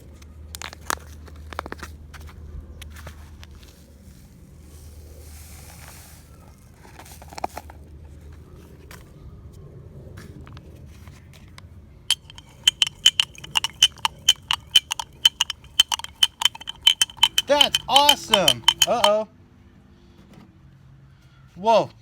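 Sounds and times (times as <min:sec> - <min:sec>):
sharp glassy clinks: 0:12.1 - 0:19.2.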